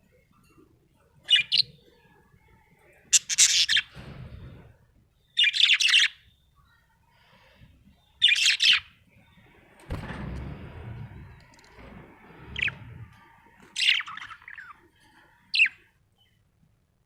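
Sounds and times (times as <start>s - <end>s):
budgerigar chirping: 13.8s - 14.8s.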